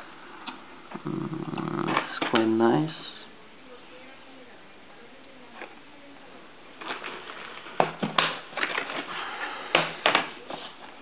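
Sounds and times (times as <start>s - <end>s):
packaging rustling and scraping: 6.8s - 11.0s.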